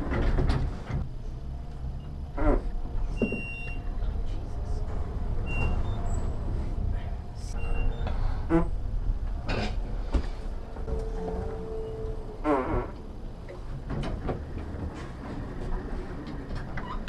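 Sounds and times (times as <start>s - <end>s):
elevator car rumbling: 0.0s - 17.0s
short squeaks: 5.5s - 6.4s.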